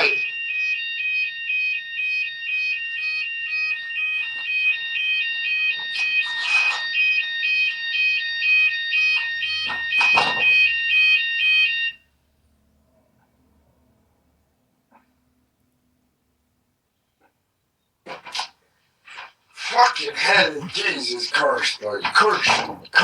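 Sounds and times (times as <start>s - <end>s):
fire alarm tones: 0.0s - 12.1s, 19.6s - 23.0s.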